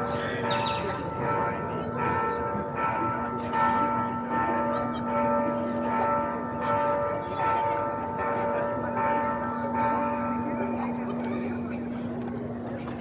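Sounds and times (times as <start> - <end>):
church bell ringing: 0.0 - 12.8.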